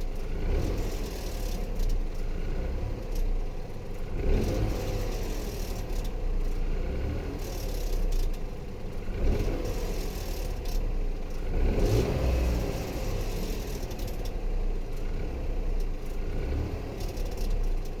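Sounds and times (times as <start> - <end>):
car engine decelerating: 11.5 - 14.3.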